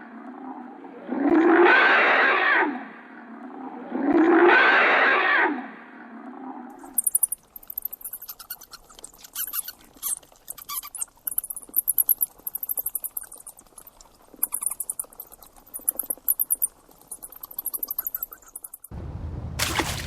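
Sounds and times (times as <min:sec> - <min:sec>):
animal high-pitched chirping: 0:06.8 - 0:18.9.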